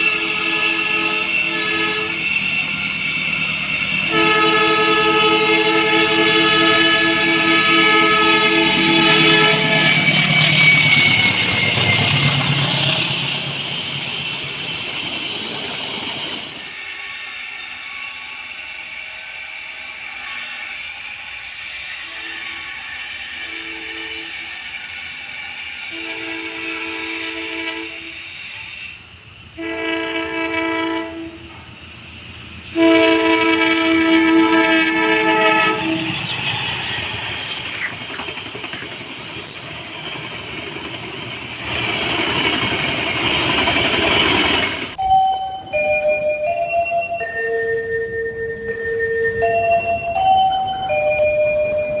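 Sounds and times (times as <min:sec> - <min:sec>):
locomotive two-tone horn: 0:00.0 - 0:11.8, 0:21.6 - 0:24.7, 0:25.7 - 0:29.0, 0:29.6 - 0:31.6, 0:32.7 - 0:36.3
train wheels rumbling on rail: 0:00.0 - 0:45.1.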